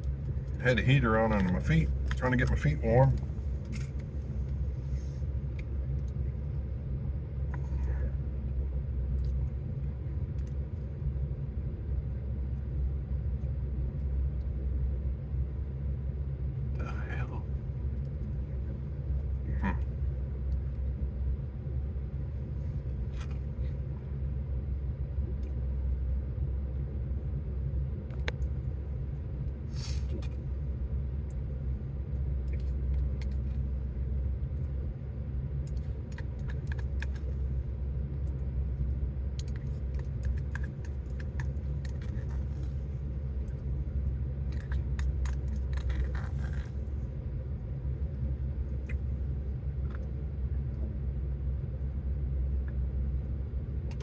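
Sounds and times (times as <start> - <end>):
heater running: 0.0 - 54.0
truck engine idling: 0.0 - 54.0
small clicks and rustles: 1.3 - 6.2, 32.1 - 33.8, 35.6 - 37.6, 38.2 - 47.0.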